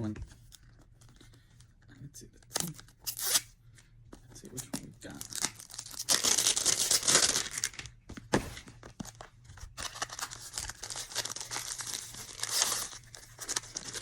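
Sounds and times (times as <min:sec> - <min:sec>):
packaging tearing and crinkling: 0:05.1 - 0:07.9, 0:09.8 - 0:14.0.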